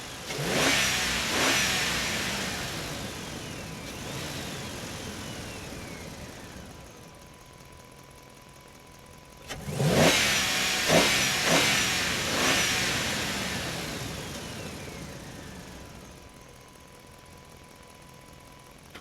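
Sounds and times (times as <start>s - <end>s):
truck engine revving: 0.0s - 6.9s, 9.5s - 16.1s.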